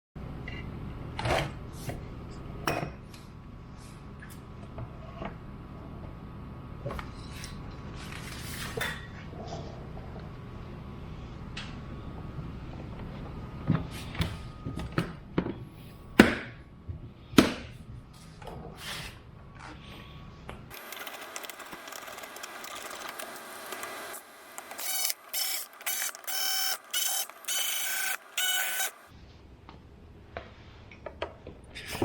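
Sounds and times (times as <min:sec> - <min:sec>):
small electric motor whining: 0:23.8 - 0:29.1.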